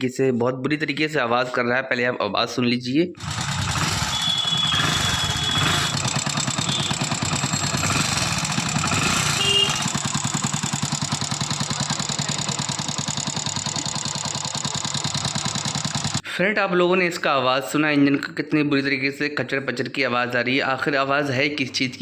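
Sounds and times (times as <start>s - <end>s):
motorcycle engine idling: 3.2s - 16.2s.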